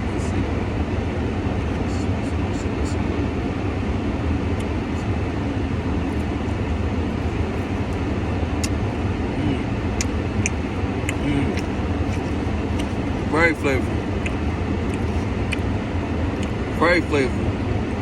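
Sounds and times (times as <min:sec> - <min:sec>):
car running rumble: 0:00.0 - 0:18.0
chewing clicks and smacks: 0:04.6 - 0:04.8, 0:06.0 - 0:09.0, 0:09.8 - 0:16.7.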